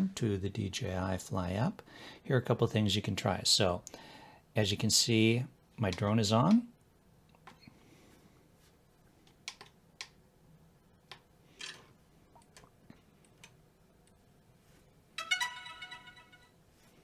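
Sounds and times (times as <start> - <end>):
electronic chime: 15.2 - 16.6.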